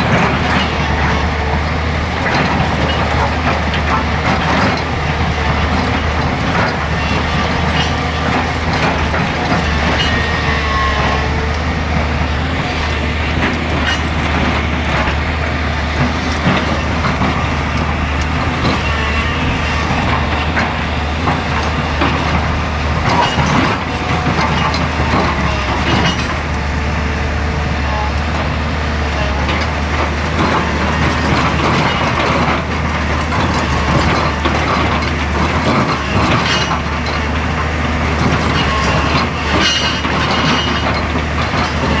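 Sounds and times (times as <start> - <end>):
excavator diesel engine running: 0.0 - 42.0.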